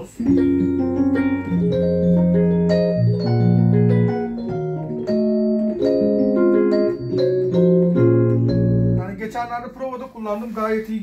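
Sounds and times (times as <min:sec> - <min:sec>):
electric piano chords: 0:00.0 - 0:09.3.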